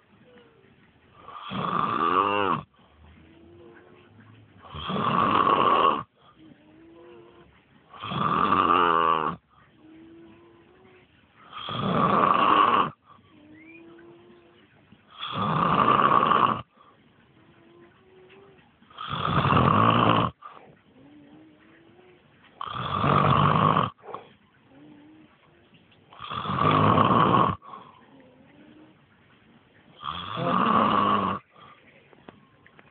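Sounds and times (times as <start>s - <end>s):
quiet breathing: 0.0s - 1.6s, 2.2s - 19.5s, 20.3s - 26.9s, 27.5s - 30.5s, 31.1s - 32.9s
man snoring: 1.3s - 2.7s, 4.7s - 6.1s, 8.0s - 9.4s, 11.5s - 13.0s, 15.2s - 16.7s, 19.0s - 20.4s, 22.6s - 24.0s, 26.2s - 27.6s, 30.0s - 31.4s.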